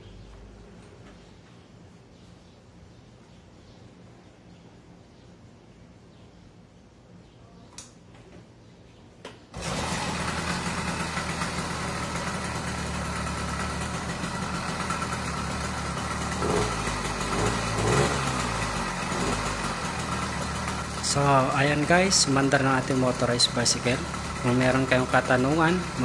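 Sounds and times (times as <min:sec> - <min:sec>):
small gasoline engine running: 0:09.5 - 0:26.0.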